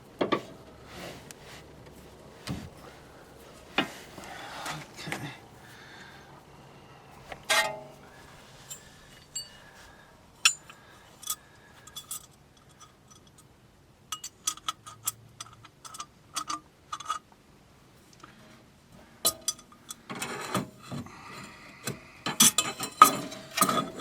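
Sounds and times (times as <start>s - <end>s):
metal hand tools clinking: 7.5s - 9.8s, 10.4s - 13.4s.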